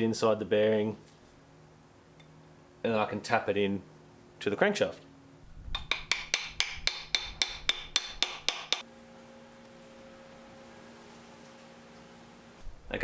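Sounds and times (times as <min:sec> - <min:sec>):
faint steady hum: 0:00.0 - 0:13.0
hammer tapping metal tool: 0:05.7 - 0:08.8.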